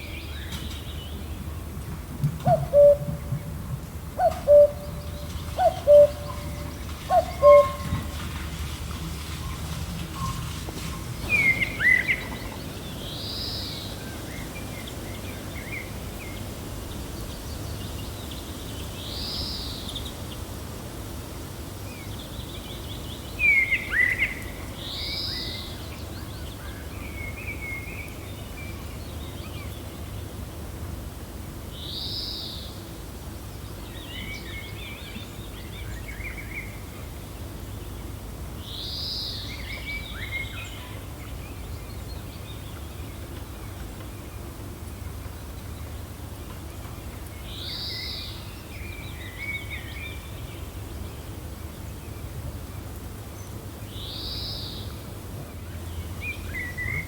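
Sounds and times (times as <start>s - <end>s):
low rumble of wind: 0.0s - 57.0s
birds calling: 2.4s - 16.2s.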